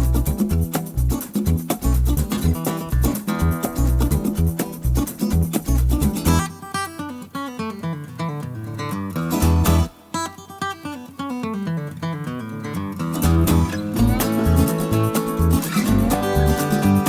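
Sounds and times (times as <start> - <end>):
deep bass notes: 0.0 - 6.4, 13.2 - 17.0
plucked-string music: 0.0 - 6.6, 13.1 - 17.0.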